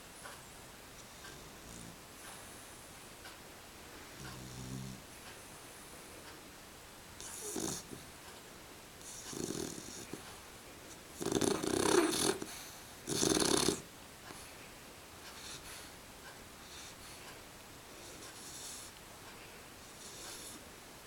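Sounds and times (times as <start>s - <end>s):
rasping snoring: 1.1s - 2.0s, 4.2s - 5.0s, 7.2s - 8.0s, 9.0s - 10.2s, 11.2s - 13.9s, 20.0s - 20.6s.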